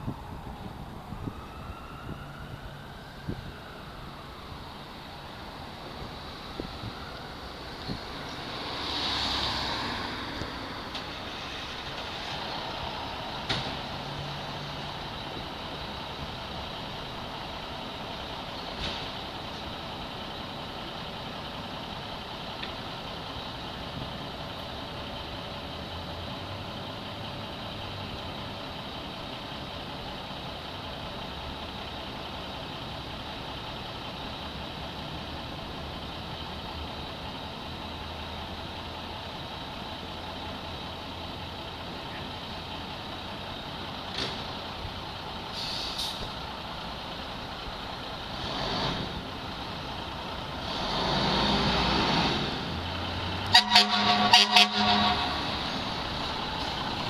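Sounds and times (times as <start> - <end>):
fire truck engine running: 0.0 - 57.0
air brakes hissing: 45.5 - 46.4
short air horn blasts: 53.5 - 55.4.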